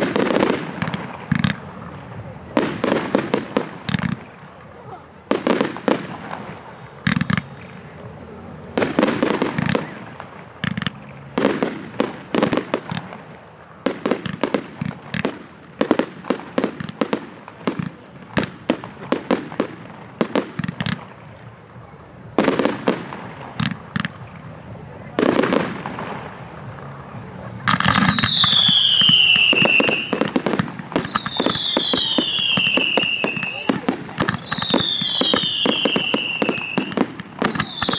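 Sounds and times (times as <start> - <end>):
firework bangs and crackles: 0.0 - 37.9
falling firework whistles: 6.0 - 7.9, 27.7 - 37.9.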